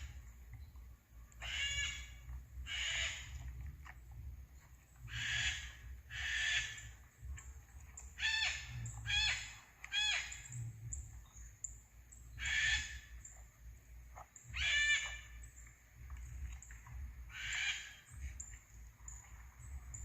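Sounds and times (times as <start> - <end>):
low rumble: 0.0 - 20.0
animal harsh calls: 5.1 - 7.0, 14.5 - 15.4.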